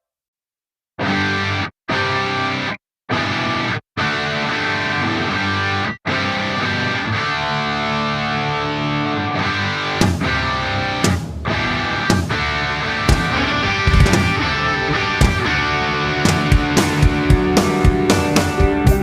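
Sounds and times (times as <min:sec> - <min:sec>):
guitar background music: 0:01.0 - 0:19.0
sharp hits: 0:09.8 - 0:18.7.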